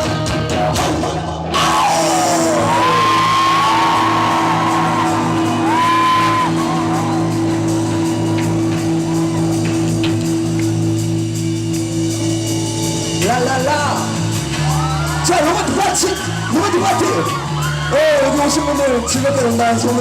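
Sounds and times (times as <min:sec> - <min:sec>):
crowd shouts: 0:01.5 - 0:09.6, 0:14.4 - 0:20.0
crowd whoop: 0:01.5 - 0:10.0, 0:12.3 - 0:13.2, 0:14.4 - 0:20.0.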